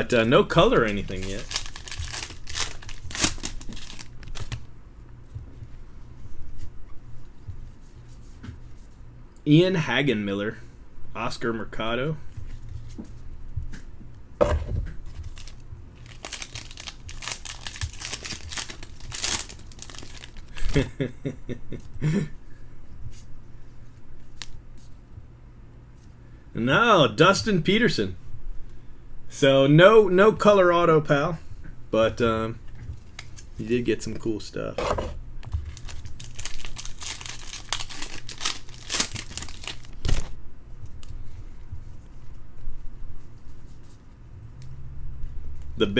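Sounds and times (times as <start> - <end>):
foil wrapper crinkling and tearing: 0.5 - 4.7, 15.0 - 20.9, 35.5 - 40.4
thump: 14.4 - 14.9.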